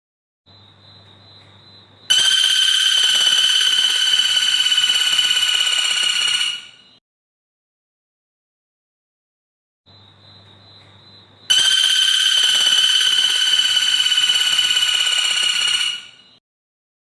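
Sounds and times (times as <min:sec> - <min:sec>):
bird high buzzing call: 0:02.1 - 0:07.0, 0:11.5 - 0:16.4.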